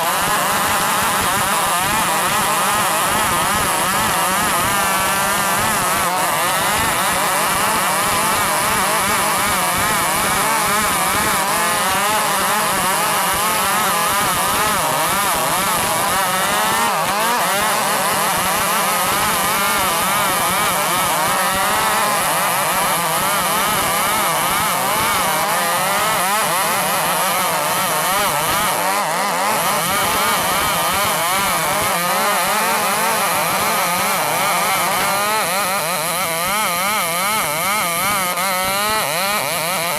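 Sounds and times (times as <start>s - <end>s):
chainsaw sawing timber: 0.0s - 39.9s.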